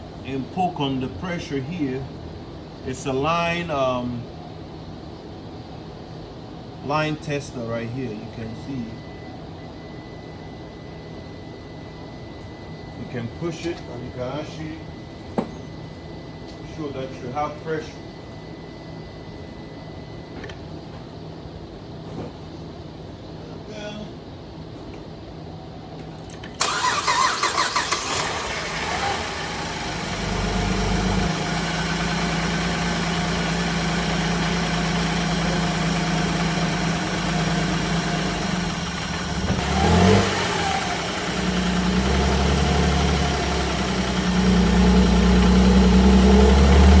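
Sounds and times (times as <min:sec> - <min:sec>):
starter cranking engine: 0:26.6 - 0:29.7
car engine idling: 0:26.6 - 0:47.0.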